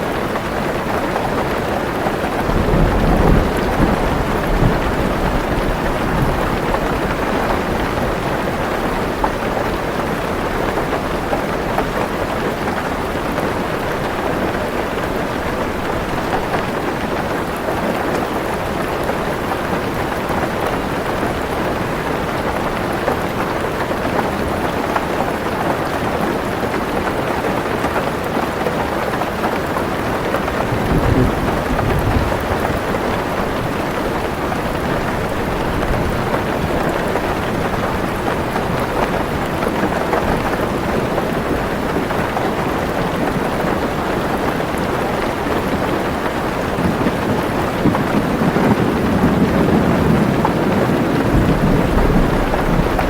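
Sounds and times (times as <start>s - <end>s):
heavy rain on car roof: 0.0s - 53.0s
thunder rumble: 2.4s - 9.3s, 30.6s - 42.2s, 46.7s - 53.0s.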